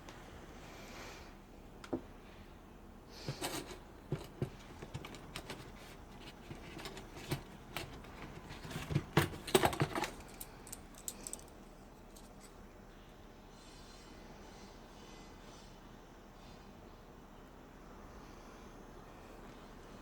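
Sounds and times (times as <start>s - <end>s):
clicks and rattles of handled tools: 3.3s - 12.6s.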